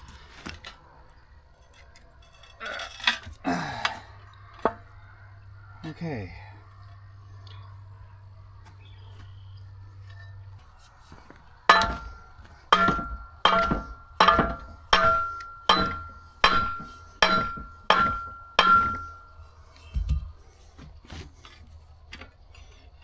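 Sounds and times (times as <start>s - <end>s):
hammer striking steel: 11.7s - 19.4s.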